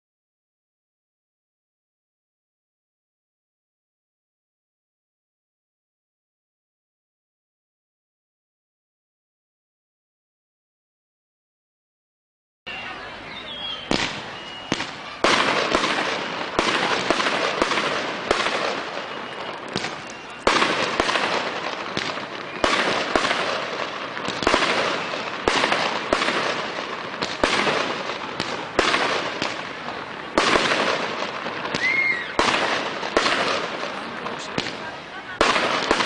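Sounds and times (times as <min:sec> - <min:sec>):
fireworks crackling: 0:12.9 - 0:36.0
firework shells bursting: 0:13.9 - 0:36.0.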